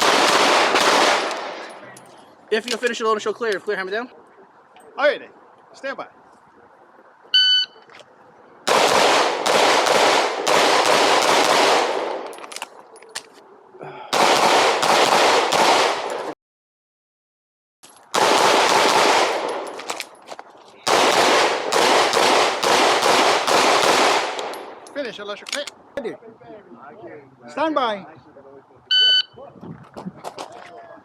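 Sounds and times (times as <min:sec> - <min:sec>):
pistol firing rapid shots: 0:00.0 - 0:01.6, 0:08.7 - 0:12.2, 0:14.1 - 0:16.2, 0:18.1 - 0:19.6, 0:20.9 - 0:24.5.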